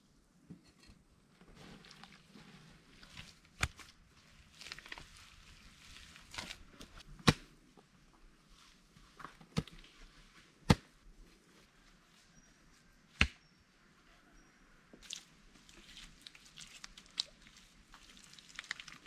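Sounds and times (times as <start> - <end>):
rustling and scraping handling noise: 0.5 - 13.1.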